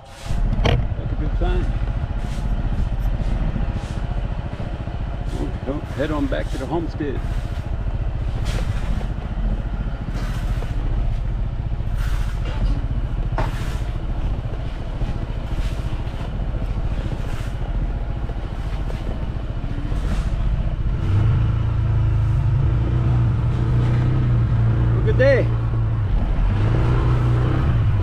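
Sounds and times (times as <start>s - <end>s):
vehicle engine running: 0.0s - 28.0s.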